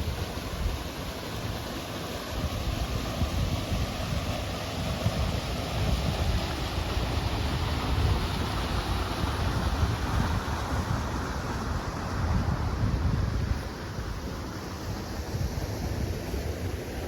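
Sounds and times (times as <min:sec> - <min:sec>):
wind buffeting microphone: 0:02.4 - 0:16.8.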